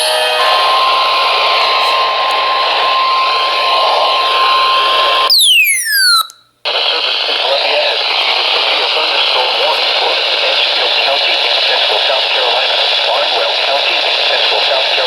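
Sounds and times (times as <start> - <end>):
falling whistle: 2.4 - 6.4
radio static hiss: 6.6 - 15.0.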